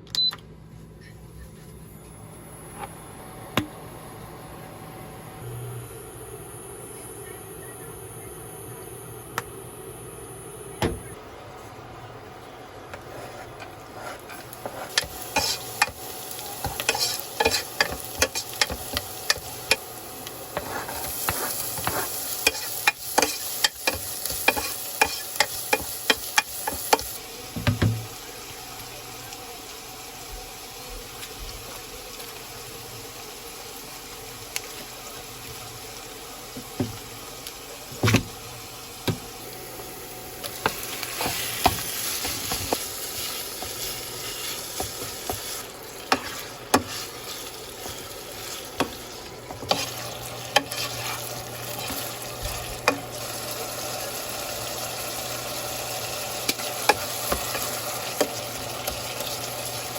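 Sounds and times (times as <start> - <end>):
utensil scraping a pan: 13.0 - 15.9, 16.6 - 19.4, 20.5 - 27.0, 41.1 - 52.0
sizzling hiss: 14.6 - 27.2.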